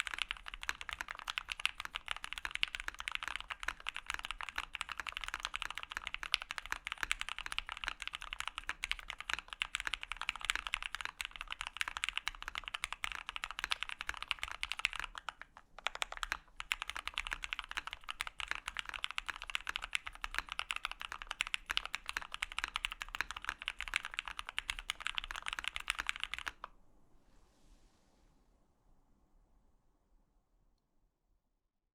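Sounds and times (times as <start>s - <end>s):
rapid mechanical keyboard typing: 0.0s - 26.7s.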